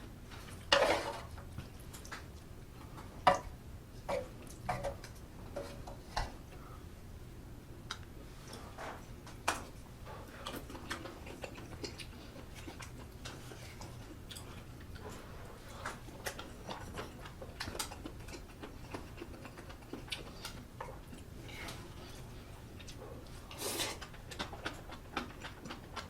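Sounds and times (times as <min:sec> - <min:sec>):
steady low hum: 0:00.0 - 0:26.0
chewing mouth noises: 0:10.2 - 0:26.0.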